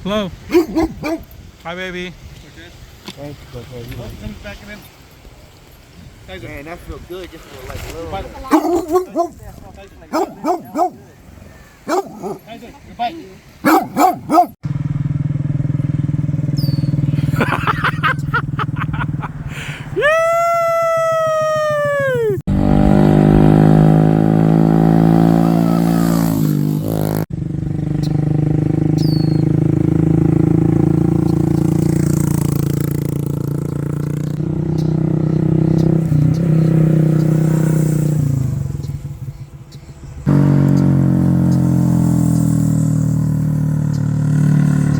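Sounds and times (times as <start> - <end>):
vehicle engine revving: 10.1 - 12.6, 13.6 - 19.6, 22.5 - 39.5, 40.2 - 44.9.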